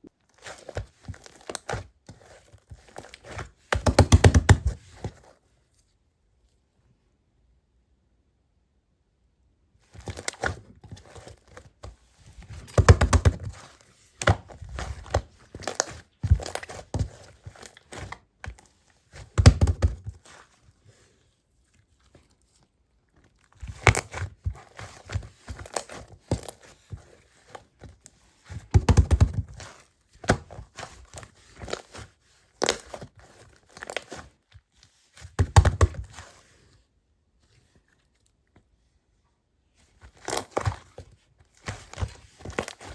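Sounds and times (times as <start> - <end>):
slime squished by hand: 12.5 - 18.5.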